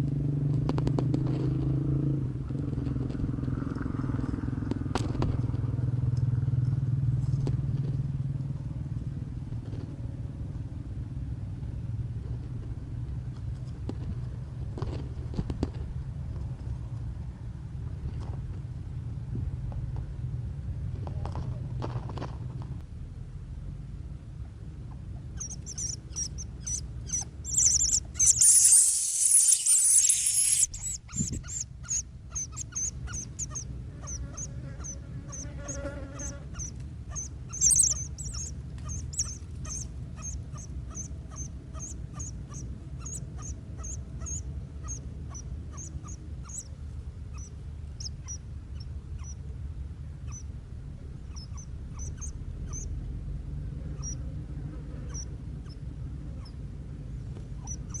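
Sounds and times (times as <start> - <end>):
nestlings squeaky begging calls: 25.3 - 49.4, 50.3 - 50.5, 51.2 - 52.9, 54.0 - 54.2, 55.1 - 55.8, 57.6 - 58.0.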